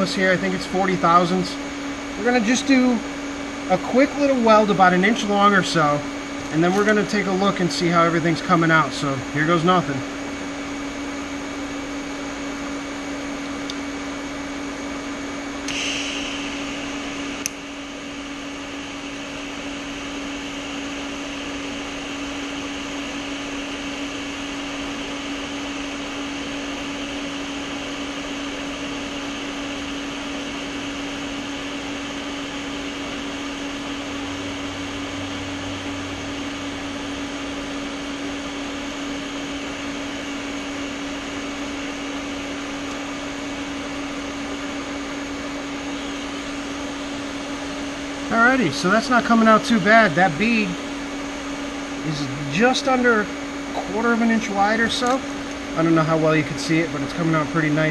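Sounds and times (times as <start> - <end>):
cooler humming: 0.0 - 57.9
welder running: 0.0 - 57.9
brief hiss: 15.7 - 16.7.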